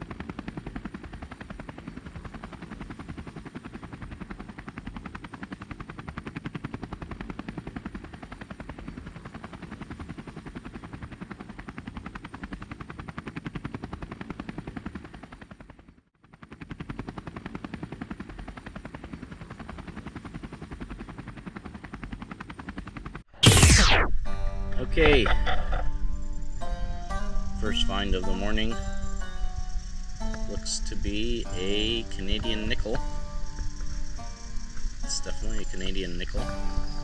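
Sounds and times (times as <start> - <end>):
rotor blades chopping: 23.0 - 24.2.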